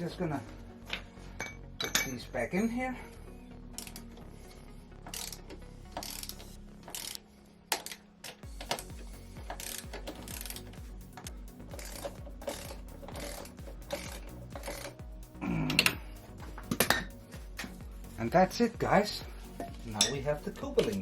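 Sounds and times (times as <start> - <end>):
ratchet wrench clicking: 5.1 - 8.0, 8.6 - 15.0.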